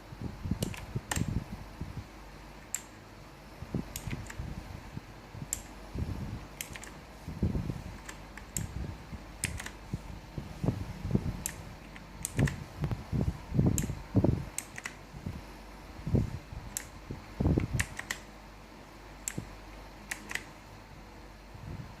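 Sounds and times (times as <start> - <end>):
steady low hum: 0.0 - 22.0
mechanical keyboard clicks: 0.6 - 1.3, 3.9 - 4.4, 6.6 - 7.0, 8.0 - 8.8, 9.4 - 9.8, 11.4 - 12.6, 14.6 - 15.0, 17.6 - 18.3, 20.1 - 20.6.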